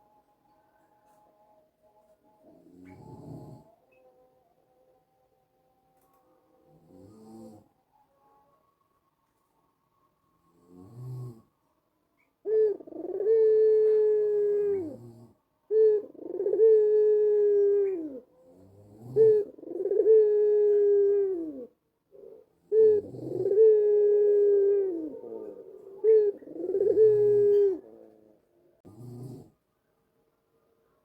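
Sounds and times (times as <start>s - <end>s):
dove cooing: 2.4s - 4.0s, 12.4s - 29.5s.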